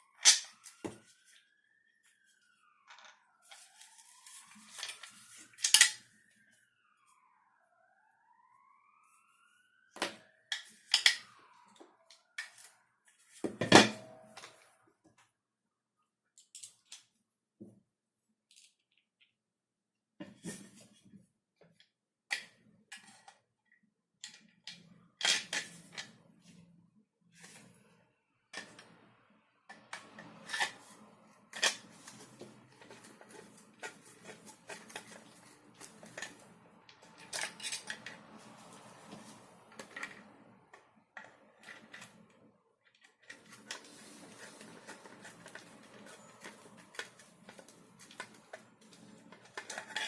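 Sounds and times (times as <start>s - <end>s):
steady rustling scrape: 30.0s - 40.3s, 43.2s - 50.0s.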